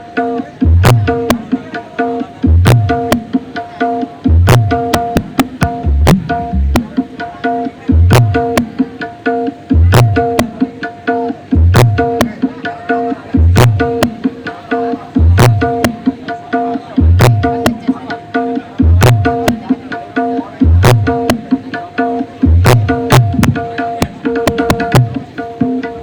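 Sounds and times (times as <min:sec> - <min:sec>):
hand-drum strokes: 0:00.0 - 0:26.0
deep bass drum hits: 0:04.3 - 0:07.0.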